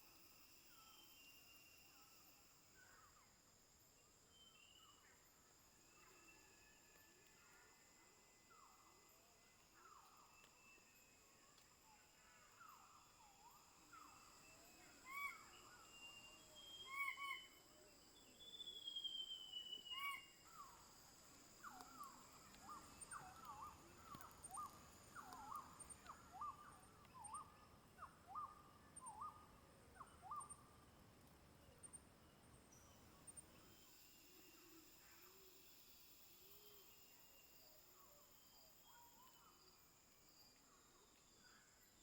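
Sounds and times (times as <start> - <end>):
high insect drone: 0.0 - 4.9, 8.5 - 27.3, 33.6 - 42.0.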